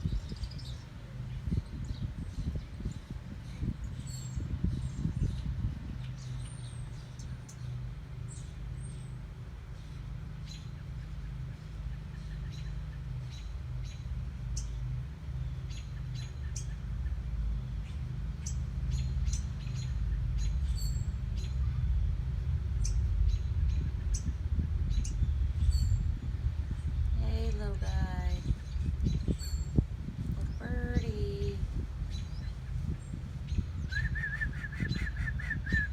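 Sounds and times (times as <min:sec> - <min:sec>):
steady low rumble: 0:00.0 - 0:35.9
bird chirping: 0:09.8 - 0:21.8, 0:22.4 - 0:35.9.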